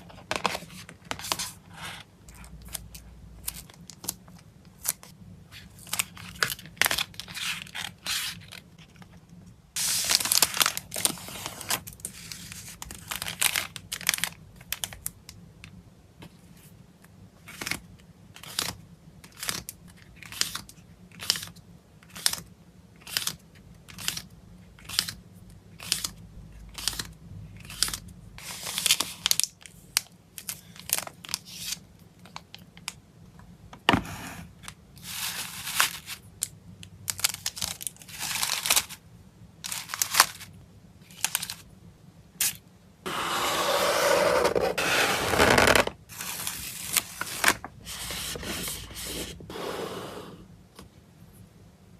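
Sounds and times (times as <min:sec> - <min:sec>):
wrapping crinkling and rustling: 0:09.8 - 0:15.2, 0:34.6 - 0:39.0, 0:39.6 - 0:41.7.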